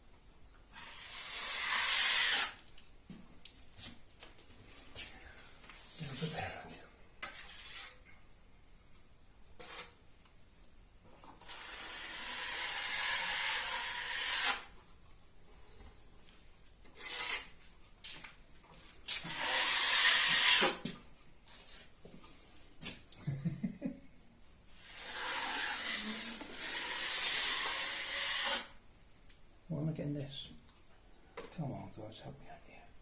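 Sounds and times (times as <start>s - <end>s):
filling knife scraping plasterboard: 0.8s - 2.6s, 7.2s - 8.0s, 9.6s - 10.0s, 11.4s - 14.7s, 17.0s - 17.6s, 19.2s - 20.8s, 24.8s - 28.7s.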